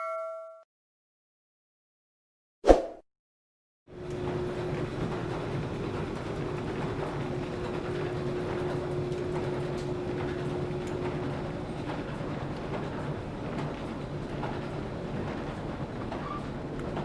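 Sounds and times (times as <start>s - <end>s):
escalator humming: 4.0s - 13.5s.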